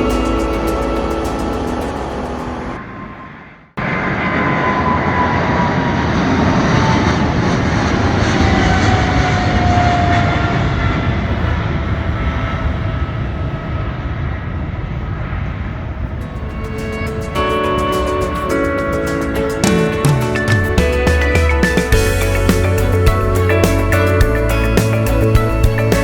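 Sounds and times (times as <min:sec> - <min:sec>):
music: 0:00.0 - 0:02.8, 0:16.2 - 0:26.0
jet engines roaring: 0:00.0 - 0:26.0.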